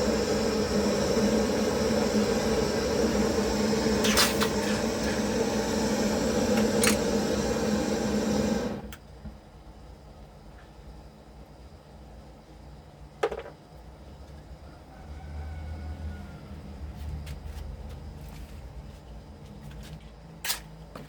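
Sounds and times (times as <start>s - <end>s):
torch flame hissing: 0.0s - 9.0s.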